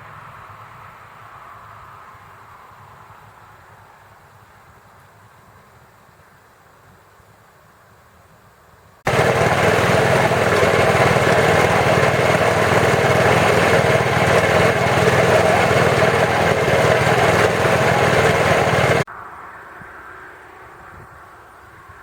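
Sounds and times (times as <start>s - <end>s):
snowblower engine running: 9.1s - 19.1s.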